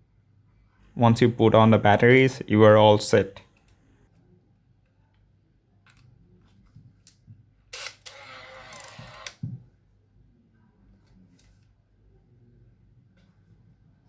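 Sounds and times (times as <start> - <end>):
camera buzzing: 7.8 - 9.4.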